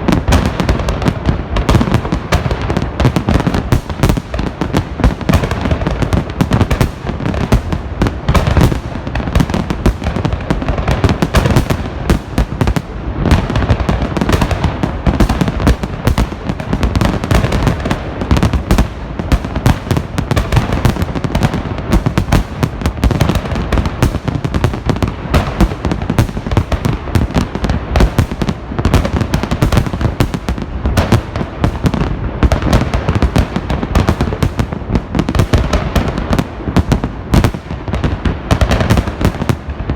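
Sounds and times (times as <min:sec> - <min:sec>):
fireworks bangs and crackling: 0:00.0 - 0:39.9.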